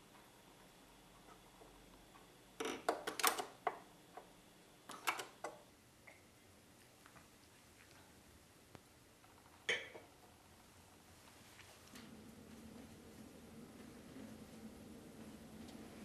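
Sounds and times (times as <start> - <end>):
faint steady hush: 5.5 - 9.2.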